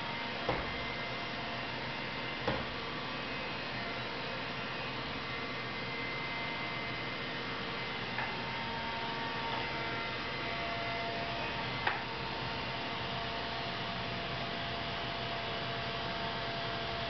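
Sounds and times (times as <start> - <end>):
vacuum cleaner humming: 0.0 - 12.9.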